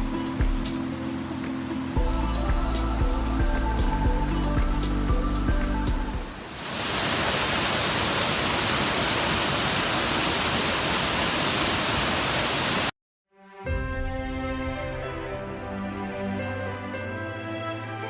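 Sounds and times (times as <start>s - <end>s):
background music: 0.0s - 6.4s, 13.4s - 18.0s
fast-flowing water rushing: 0.0s - 12.9s.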